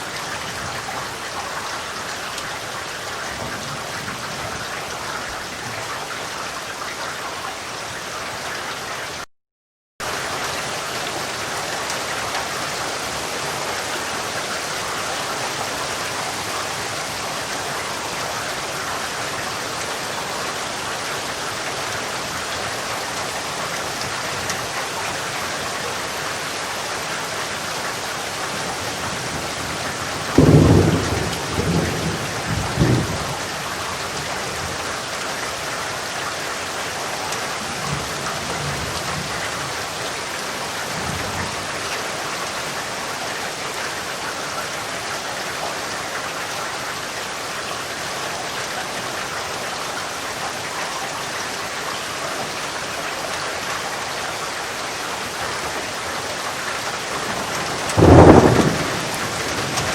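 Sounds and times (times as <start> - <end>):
steady rain hiss: 10.1 - 59.9
thunder clap rumbling: 29.1 - 33.5, 57.1 - 59.9.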